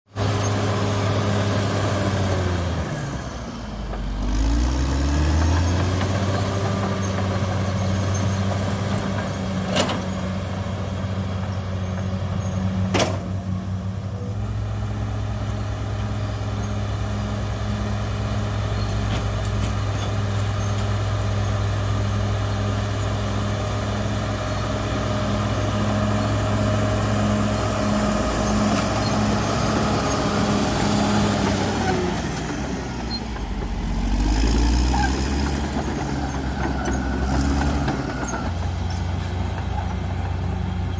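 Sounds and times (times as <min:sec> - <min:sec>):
bulldozer diesel engine: 0:00.1 - 0:40.9.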